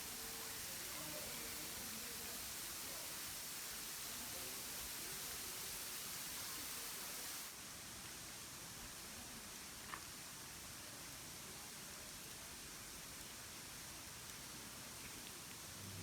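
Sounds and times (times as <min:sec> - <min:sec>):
running water hiss: 0:00.0 - 0:07.7.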